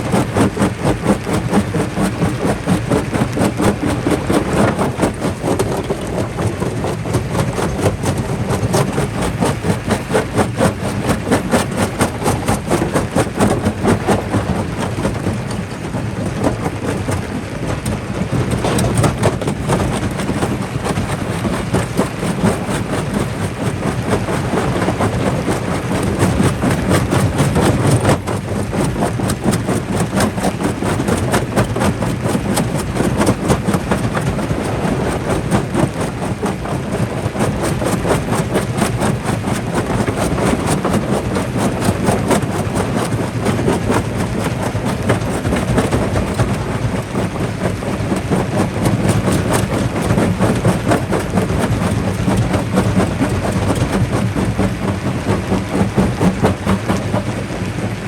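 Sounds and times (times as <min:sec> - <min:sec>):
low machine hum: 0:00.0 - 0:58.0.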